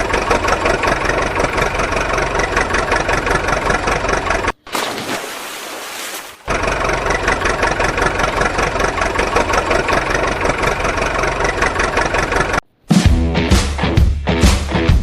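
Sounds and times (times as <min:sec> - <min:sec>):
engine idling with even chug: 0:00.0 - 0:04.6, 0:06.5 - 0:12.6.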